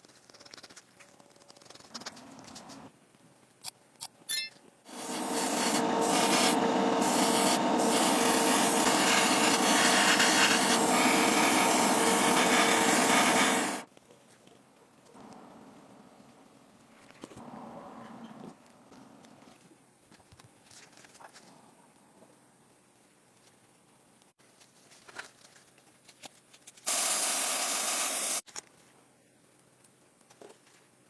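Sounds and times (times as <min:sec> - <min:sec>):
electric sander running: 0:04.9 - 0:13.8.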